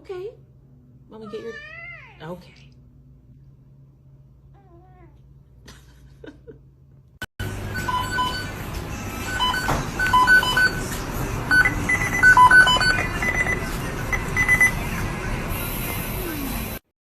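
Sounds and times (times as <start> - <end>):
short electronic beeps: 7.7 - 8.6, 9.2 - 10.9, 11.5 - 14.8.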